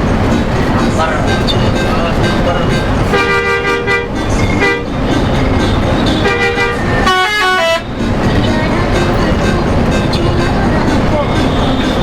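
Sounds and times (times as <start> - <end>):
engine and road noise: 0.0 - 12.0
musical air horn: 3.1 - 8.0.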